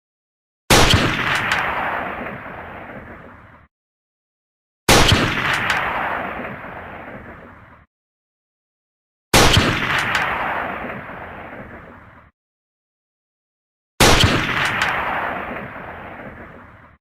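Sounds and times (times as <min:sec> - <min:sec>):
rifle shots with rumbling echo: 0:00.7 - 0:03.3, 0:04.9 - 0:07.5, 0:09.4 - 0:12.1, 0:14.0 - 0:17.0.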